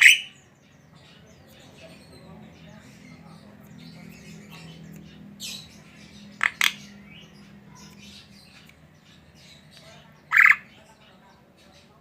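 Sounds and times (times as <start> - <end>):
myna calling: 0.0 - 0.5, 9.8 - 11.0.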